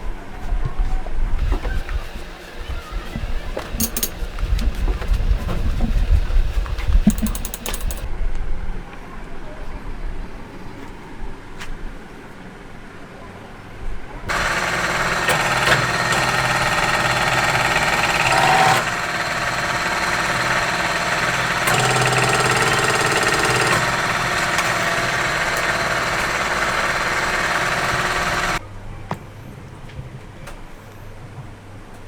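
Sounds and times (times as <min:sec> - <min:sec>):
machine humming and whining: 0:01.4 - 0:08.1, 0:14.3 - 0:28.6.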